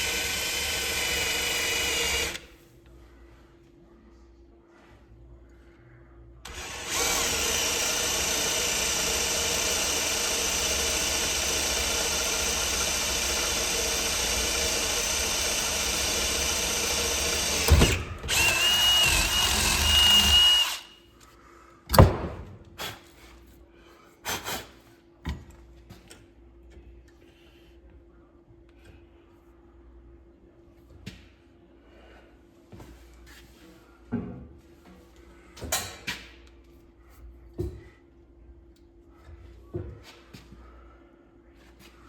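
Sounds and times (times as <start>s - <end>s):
electric drill boring: 0.0s - 2.4s, 6.5s - 20.9s
drill bit squealing: 6.5s - 20.9s.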